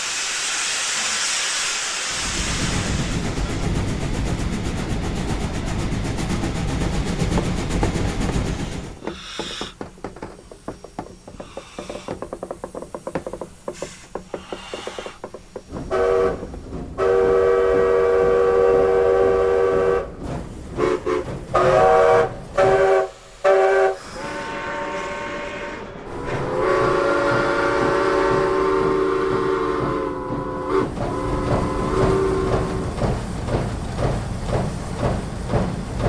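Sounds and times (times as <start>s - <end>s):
train wheels clicking: 2.1s - 24.2s, 26.1s - 36.0s
train horn blasts: 15.8s - 20.2s, 20.8s - 33.0s.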